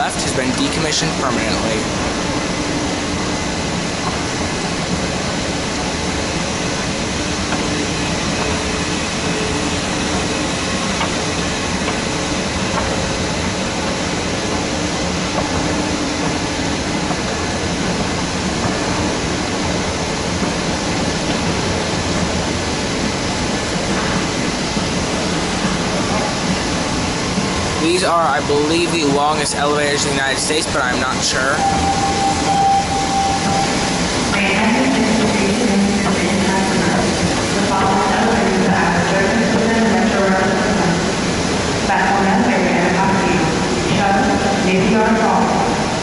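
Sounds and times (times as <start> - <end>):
faint steady tones: 30.6 - 40.6.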